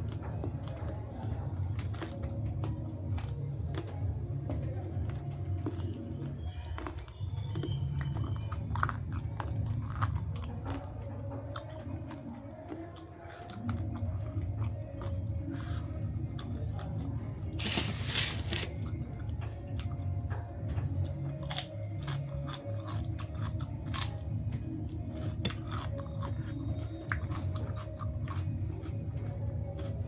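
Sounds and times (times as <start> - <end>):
person chewing with smacks: 0.0 - 30.0.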